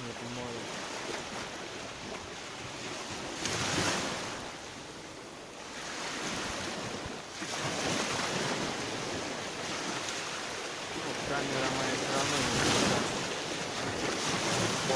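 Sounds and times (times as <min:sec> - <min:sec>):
surf washing onto shore: 0:00.0 - 0:14.9
wave breaking: 0:02.1 - 0:04.6, 0:05.8 - 0:14.9.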